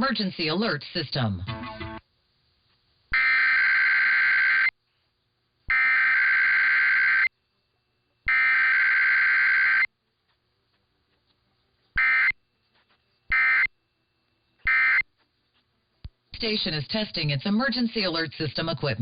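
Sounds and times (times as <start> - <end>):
screeching digital data tones: 3.2 - 4.7, 5.7 - 7.3, 8.3 - 9.9.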